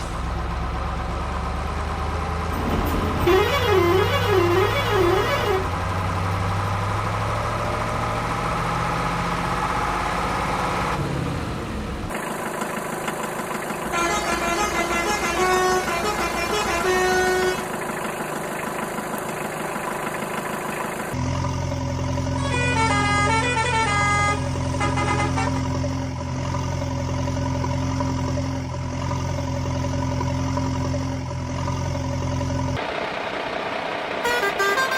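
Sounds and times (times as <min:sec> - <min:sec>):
cartoon engine hum: 0:00.0 - 0:34.9
horn toots in changing pitches: 0:02.6 - 0:06.5, 0:13.9 - 0:17.7, 0:22.3 - 0:26.0, 0:34.2 - 0:34.9.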